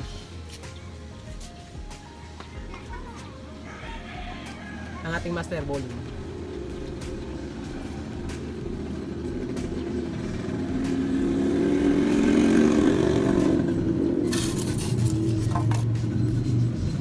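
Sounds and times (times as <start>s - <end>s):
low amplifier drone: 5.2s - 17.0s.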